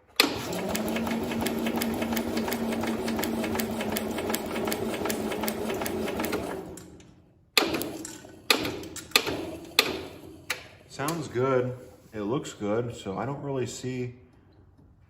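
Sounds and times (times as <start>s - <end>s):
engine cranked by starter: 0.0s - 7.0s.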